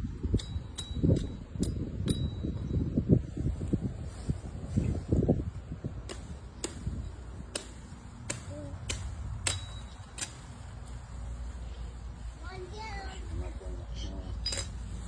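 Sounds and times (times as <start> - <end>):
blade chopping branches: 6.0 - 11.0.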